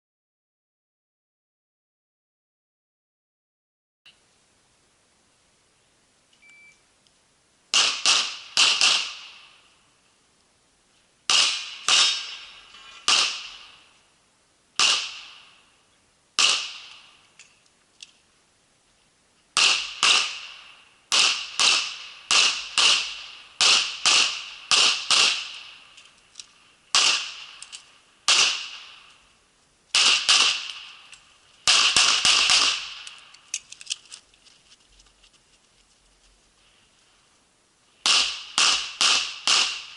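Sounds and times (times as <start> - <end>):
pistol shots: 7.7 - 9.5, 11.3 - 13.8, 14.8 - 15.6, 16.4 - 17.1, 19.6 - 25.8, 26.9 - 29.1, 29.9 - 33.2, 38.0 - 39.9.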